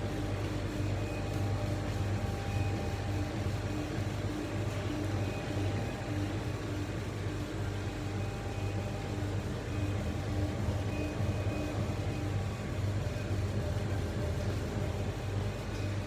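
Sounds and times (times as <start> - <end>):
laser cutter low hum: 0.0 - 16.0.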